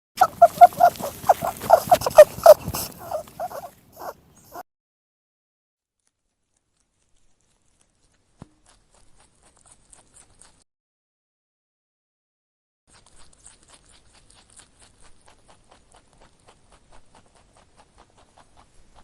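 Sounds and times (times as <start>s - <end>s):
faint clicks and rustles: 0.2s - 4.2s
rabbit squeaks and grunts: 0.2s - 4.6s.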